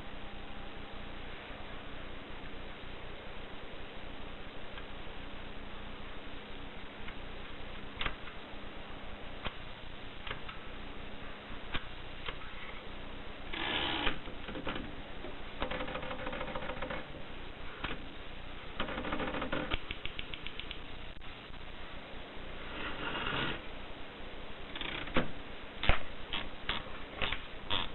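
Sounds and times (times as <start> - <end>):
fast mechanical clicks: 15.6 - 17.2, 18.8 - 20.9.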